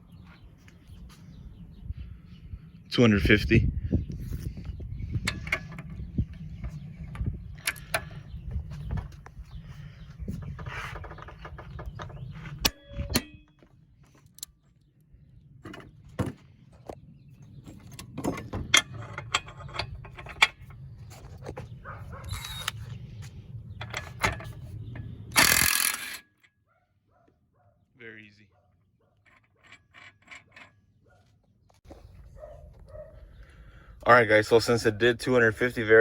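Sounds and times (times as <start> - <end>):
metal tool clicks and ratcheting: 25.3 - 26.4.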